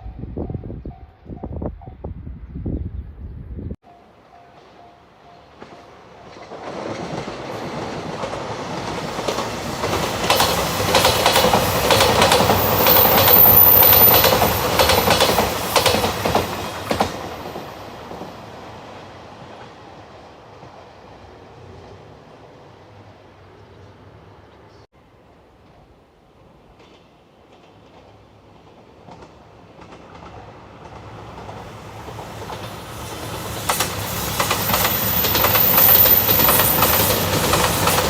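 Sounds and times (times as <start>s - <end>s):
diesel train passing: 3.8s - 38.0s
wheels clacking over rail joints: 4.6s - 18.4s, 26.7s - 38.0s.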